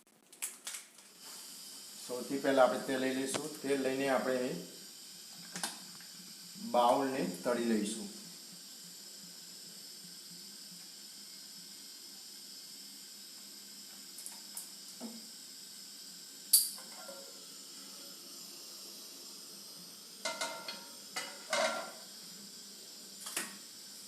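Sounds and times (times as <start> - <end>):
faint steady hiss: 0.2 - 24.0
utensils clinking against pan: 16.5 - 17.3, 20.2 - 22.0.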